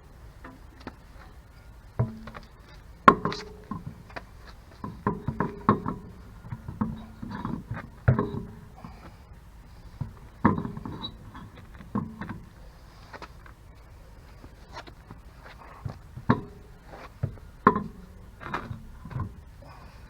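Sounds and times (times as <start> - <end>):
metal tools clanking: 2.0 - 9.0.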